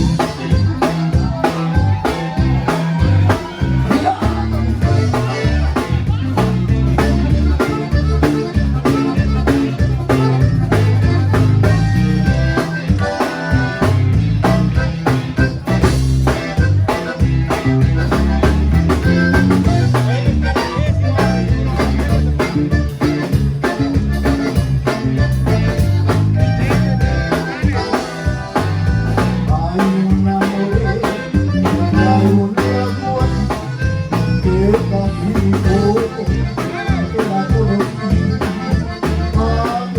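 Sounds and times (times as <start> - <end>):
bajo sexto guitar: 0.0 - 39.9
bass: 0.0 - 39.9
button accordion: 0.0 - 39.9
drums: 0.0 - 39.9.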